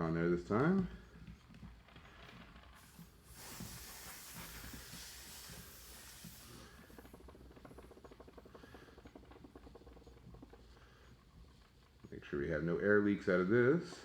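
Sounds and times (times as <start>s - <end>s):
fast small ticks: 0.0s - 14.0s
air hissing from tire valve: 2.8s - 7.3s.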